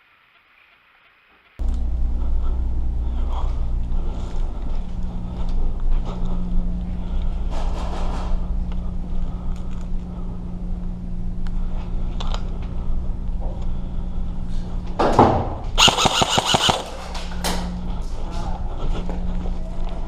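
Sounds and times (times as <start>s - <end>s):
low hum: 1.6s - 20.0s
airsoft gun rapid firing: 15.8s - 17.0s.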